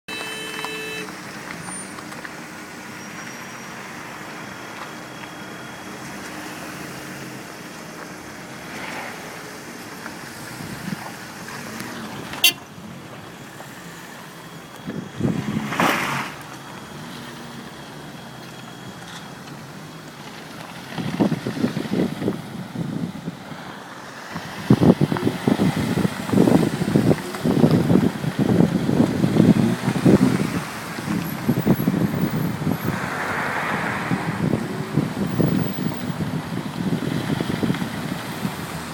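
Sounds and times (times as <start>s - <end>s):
street traffic: 0.0s - 38.9s
vehicles passing close: 0.1s - 38.9s.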